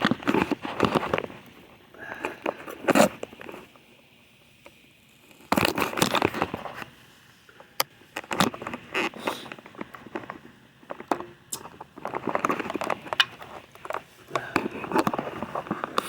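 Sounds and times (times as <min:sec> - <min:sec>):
scraping and rustling: 0:08.2 - 0:16.0.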